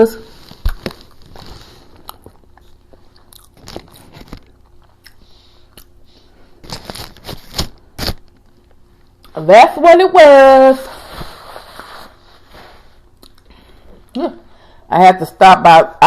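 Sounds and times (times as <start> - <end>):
person chewing crunchy food: 0.5 - 7.6
wet mouth smacking clicks: 13.2 - 13.5.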